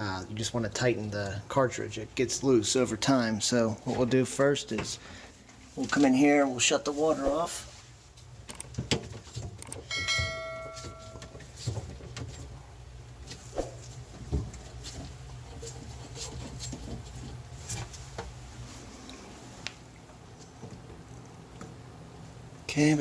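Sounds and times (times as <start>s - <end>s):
ringing tone: 9.9s - 11.4s.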